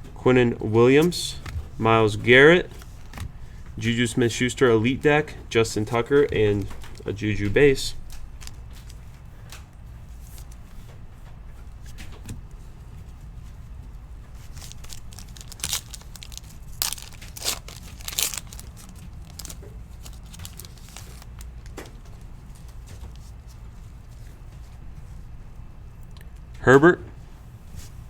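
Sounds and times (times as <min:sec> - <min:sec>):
steady low hum: 0:00.0 - 0:28.0
foil wrapper crinkling: 0:05.2 - 0:10.6, 0:14.3 - 0:23.4
foil ripping: 0:07.9 - 0:09.1, 0:14.4 - 0:22.0.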